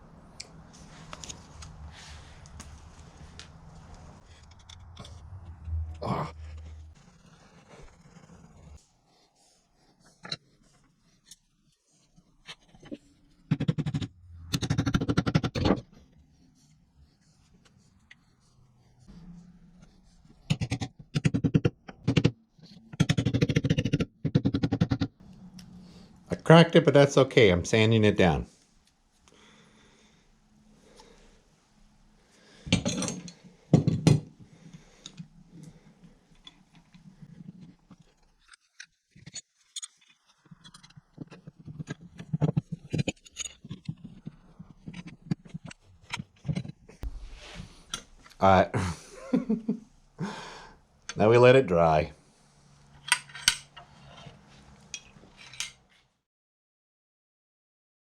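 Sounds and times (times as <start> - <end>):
clicks and knocks of small tools: 37.6 - 46.8, 53.0 - 55.9
man laughing: 48.6 - 50.6.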